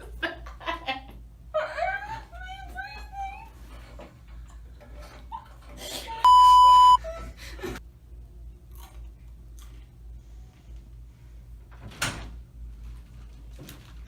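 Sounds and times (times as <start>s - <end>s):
electronic beep: 6.3s - 7.0s.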